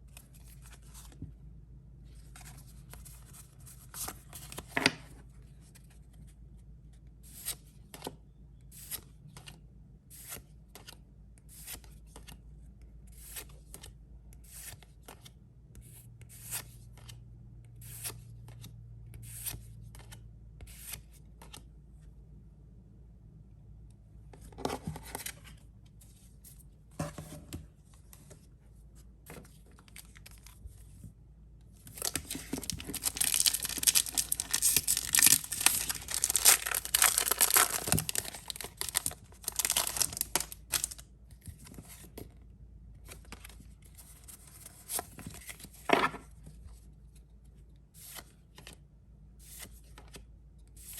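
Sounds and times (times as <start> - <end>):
foil wrapper crinkling: 32.0 - 41.0.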